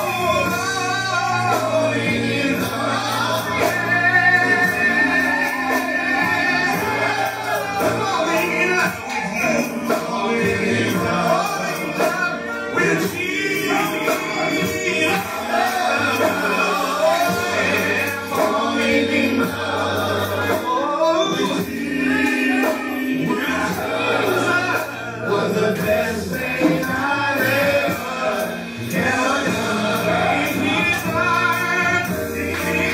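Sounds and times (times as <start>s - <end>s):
bass: 0.0s - 32.9s
choir singing: 0.0s - 32.9s
man singing lead: 0.0s - 32.9s
sustained keyboard chords: 0.0s - 32.9s.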